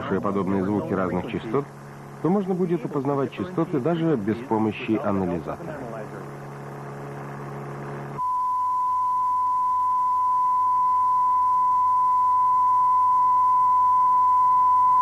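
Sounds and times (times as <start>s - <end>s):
sine test tone: 6.3s - 15.0s.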